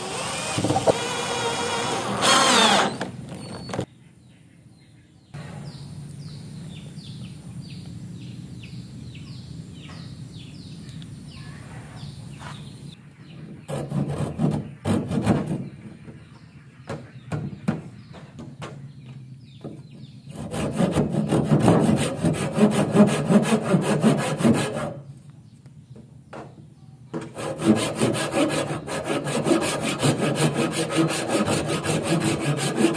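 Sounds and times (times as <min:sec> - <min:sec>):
wood being worked by hand: 0:00.0 - 0:03.9, 0:19.6 - 0:25.0, 0:27.1 - 0:32.9
bird chirping: 0:02.9 - 0:20.5
steady low hum: 0:04.0 - 0:13.7.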